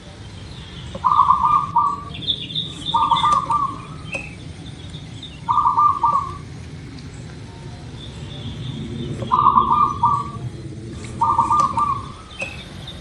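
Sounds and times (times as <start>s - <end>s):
small birds chirping: 0.0s - 13.0s
dove cooing: 1.0s - 4.4s, 5.4s - 6.6s, 9.0s - 13.0s.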